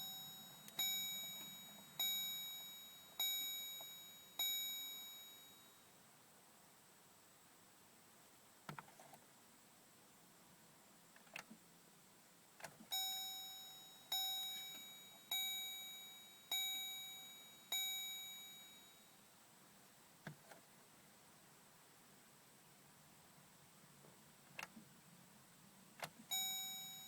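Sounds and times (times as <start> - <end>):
truck warning chime: 0.0 - 5.8, 12.9 - 19.2, 26.3 - 27.0.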